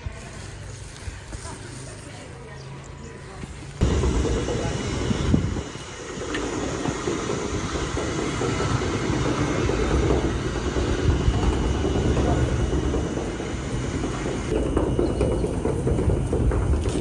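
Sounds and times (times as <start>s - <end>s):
heavy machinery rumbling and rattling: 3.5s - 17.0s.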